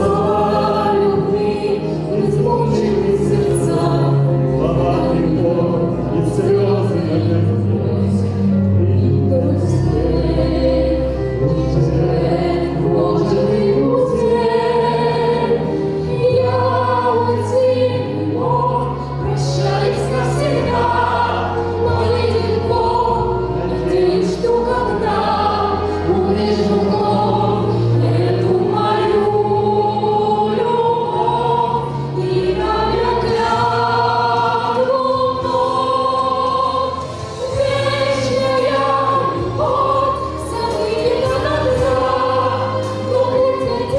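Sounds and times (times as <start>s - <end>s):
choir singing held notes: 0.0s - 43.9s
instrumental accompaniment with bass: 0.0s - 43.9s.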